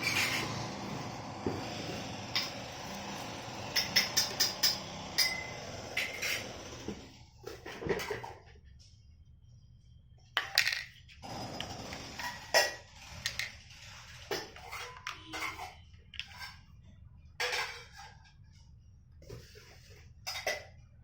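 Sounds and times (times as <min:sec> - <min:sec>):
hard objects clattering: 0:00.0 - 0:08.4, 0:10.4 - 0:16.6.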